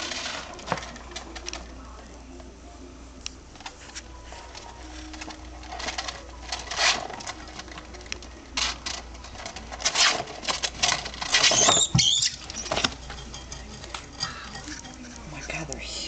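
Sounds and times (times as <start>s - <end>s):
rats scratching: 0.0s - 2.2s, 3.6s - 16.0s
rat squeak: 11.3s - 15.0s.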